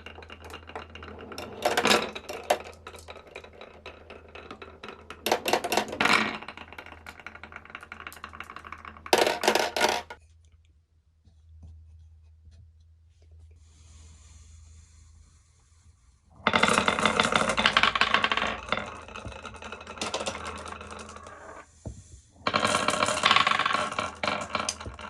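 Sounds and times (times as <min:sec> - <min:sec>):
marbles rolling down a track: 0:00.0 - 0:10.2, 0:16.4 - 0:21.7, 0:22.4 - 0:25.0.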